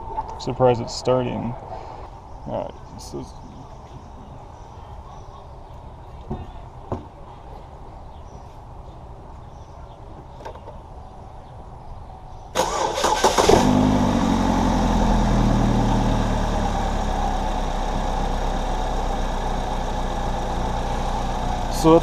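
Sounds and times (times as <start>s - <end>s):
engine cranking and idling: 12.6s - 22.0s.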